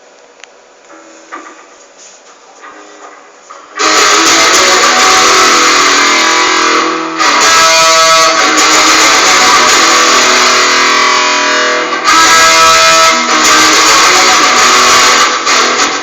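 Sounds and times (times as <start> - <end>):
rock guitar strummed loudly: 3.7 - 16.0.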